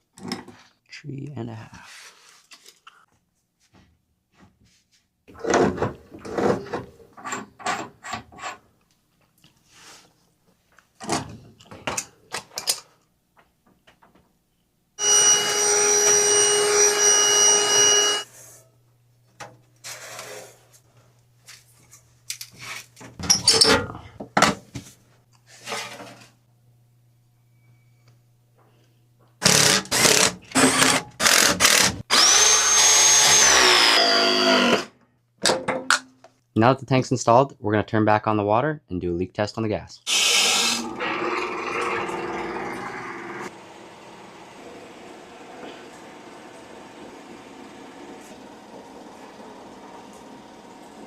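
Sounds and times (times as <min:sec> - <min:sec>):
power tool whining: 0:15.0 - 0:18.3, 0:29.4 - 0:34.9, 0:40.1 - 0:51.0
tools and fittings clanking: 0:23.2 - 0:24.0.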